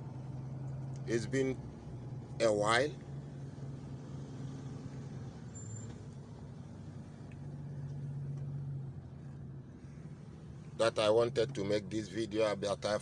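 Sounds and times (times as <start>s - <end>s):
diesel engine humming: 0.0s - 13.0s.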